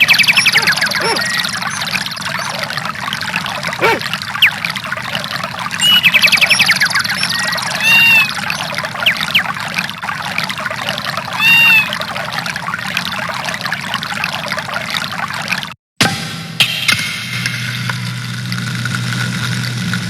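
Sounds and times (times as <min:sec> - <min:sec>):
bird calls: 0:00.0 - 0:04.7, 0:05.6 - 0:09.7, 0:11.3 - 0:12.4
running water: 0:00.0 - 0:15.8.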